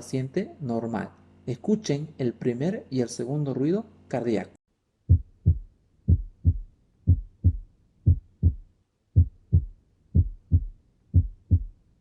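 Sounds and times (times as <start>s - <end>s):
heartbeat through stethoscope: 5.1s - 11.8s.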